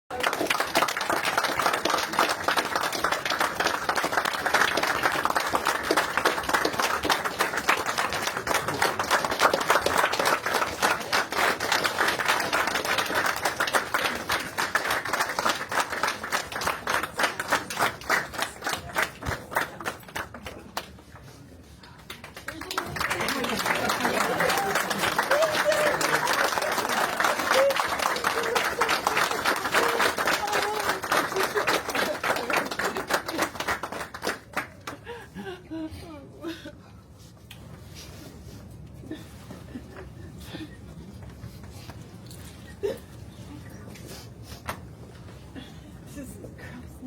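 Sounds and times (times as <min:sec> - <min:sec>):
people clapping: 0:00.0 - 0:35.4.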